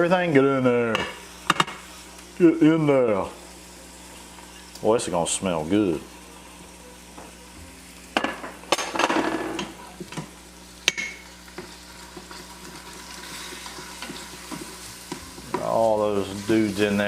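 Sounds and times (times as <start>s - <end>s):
low sizzle: 0.0s - 17.0s
spoon stirring and scraping pot: 11.1s - 15.7s.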